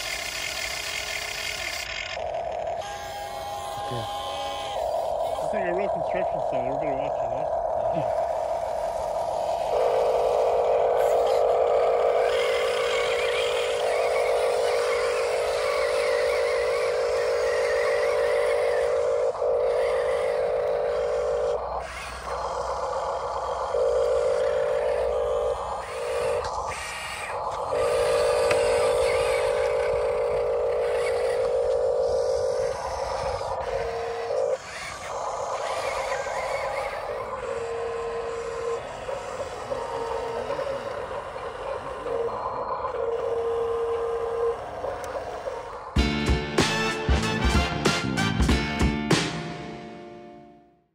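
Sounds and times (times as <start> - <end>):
small electric motors whining: 0.0 - 47.1.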